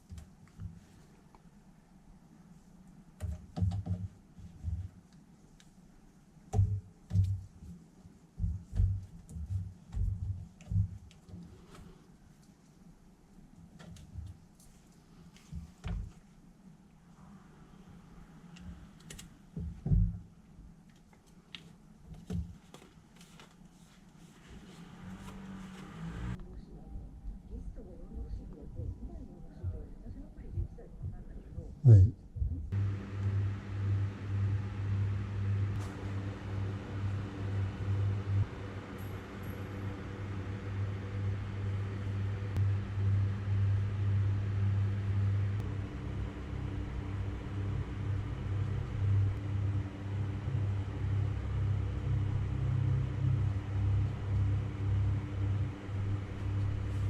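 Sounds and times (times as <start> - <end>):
steady low hum: 23.3 - 57.0.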